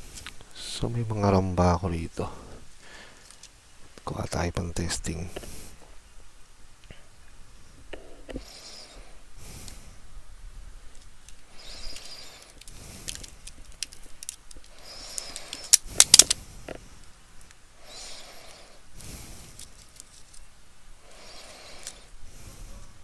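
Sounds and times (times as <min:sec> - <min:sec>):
sharp clicks: 0:11.9 - 0:16.4
hands rummaging through computer parts: 0:15.2 - 0:16.4.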